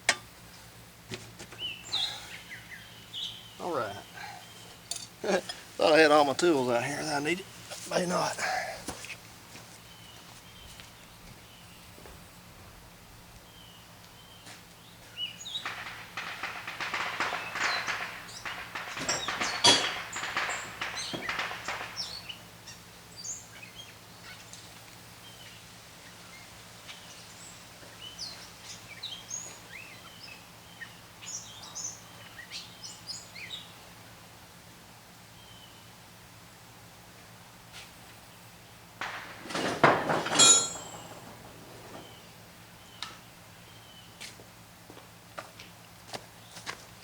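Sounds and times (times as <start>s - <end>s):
small birds chirping: 1.5s - 12.2s, 13.4s - 33.8s
quick clicking and rattling: 15.5s - 22.4s, 39.0s - 42.4s.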